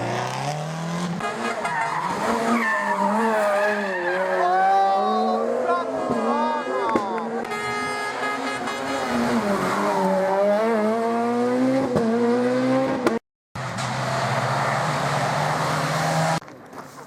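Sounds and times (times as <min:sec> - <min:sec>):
car engine accelerating hard: 0:09.0 - 0:16.4.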